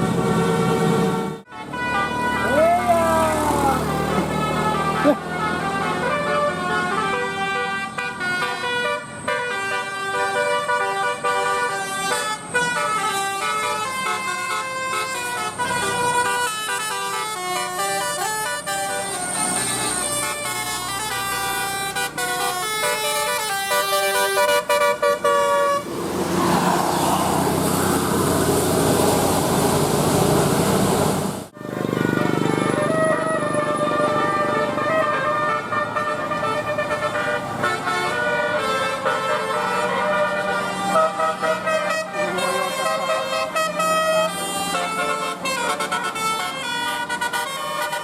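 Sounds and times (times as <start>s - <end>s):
multi-tone bus air horn tune: 0.0s - 26.3s, 31.6s - 48.0s
loud rushing noise: 25.8s - 31.5s.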